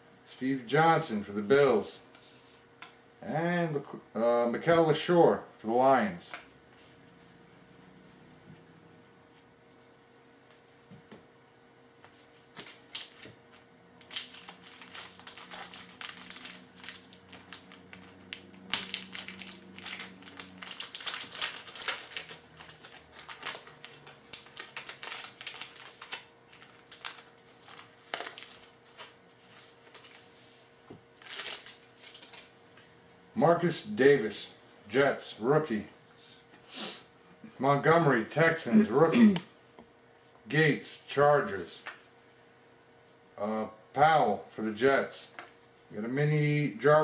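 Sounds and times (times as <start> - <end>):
cards shuffling and flicking: 12.0 - 30.2, 31.2 - 32.6.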